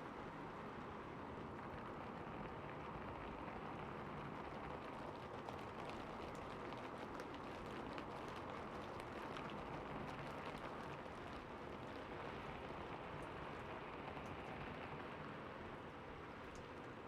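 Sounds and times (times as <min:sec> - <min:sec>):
rain on a rooftop: 0:00.0 - 0:17.0.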